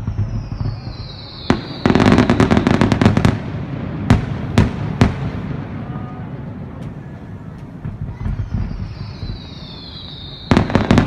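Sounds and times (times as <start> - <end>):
firework whistle: 0.0 - 3.5, 7.9 - 11.0
firework bangs: 0.0 - 11.0
firework crackling pops: 0.0 - 11.0.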